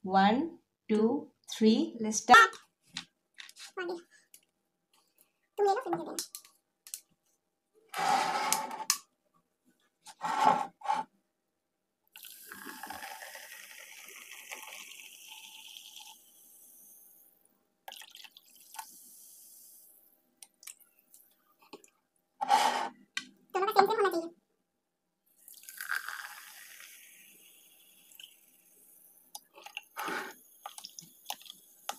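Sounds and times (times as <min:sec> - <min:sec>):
drink pouring into cup: 0:12.2 - 0:16.2, 0:17.9 - 0:18.9, 0:25.4 - 0:28.5, 0:29.5 - 0:31.9.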